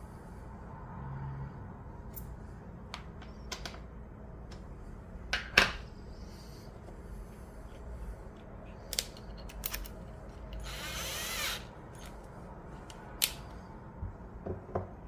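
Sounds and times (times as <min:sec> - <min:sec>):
tools and plastic parts clicking: 0:08.8 - 0:12.2.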